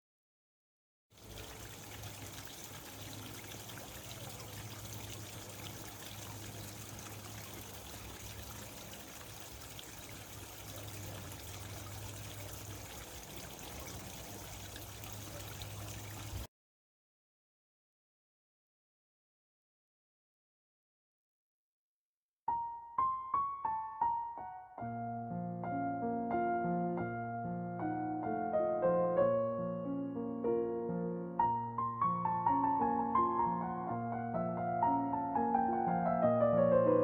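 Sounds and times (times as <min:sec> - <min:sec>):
water trickling: 0:01.2 - 0:16.5.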